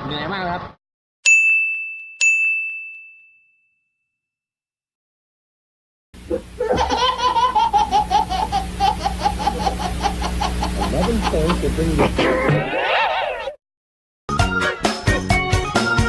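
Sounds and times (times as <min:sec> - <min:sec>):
bright high dings: 0:01.2 - 0:04.2
people laughing: 0:06.3 - 0:13.6.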